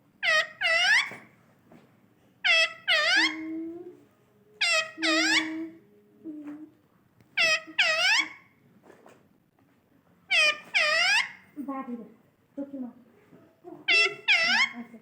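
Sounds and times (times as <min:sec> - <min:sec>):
parrot shrill screeches: 0:00.2 - 0:01.3, 0:02.5 - 0:03.4, 0:04.6 - 0:05.6, 0:07.4 - 0:08.4, 0:10.3 - 0:11.5, 0:13.9 - 0:14.8.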